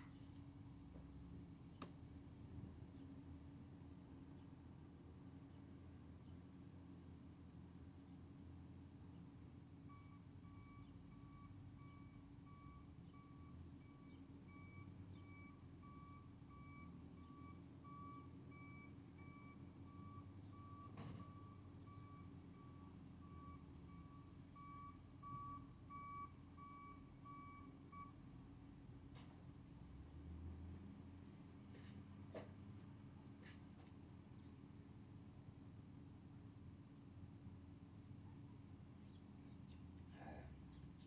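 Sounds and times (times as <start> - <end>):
faint reversing alarm beeping: 9.8 - 28.3
low machinery rumble: 34.0 - 41.0.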